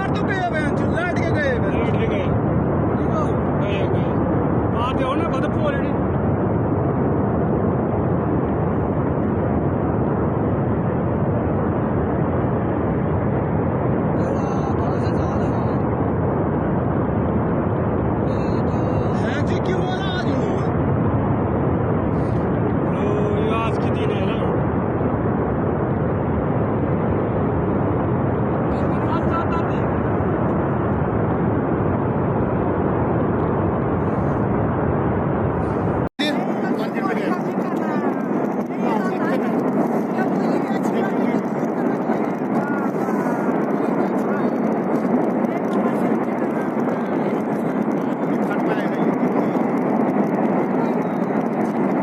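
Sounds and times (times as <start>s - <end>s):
flood torrent rushing rumble: 0.0s - 52.0s.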